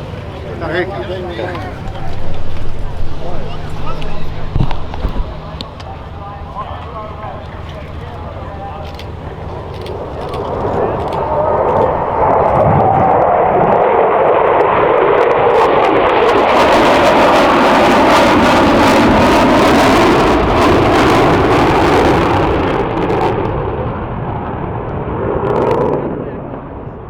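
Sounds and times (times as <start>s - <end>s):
jet roar flyby: 0.0s - 27.0s.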